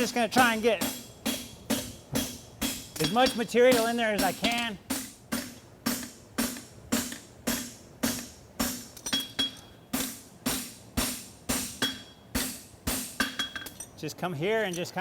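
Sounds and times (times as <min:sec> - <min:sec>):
hammer striking metal on anvil: 0:00.4 - 0:14.0.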